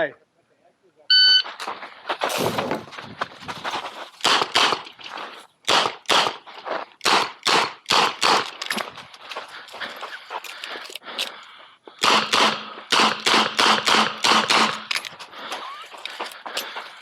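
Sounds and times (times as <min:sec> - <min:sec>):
shot timer beep: 0:01.1 - 0:01.5.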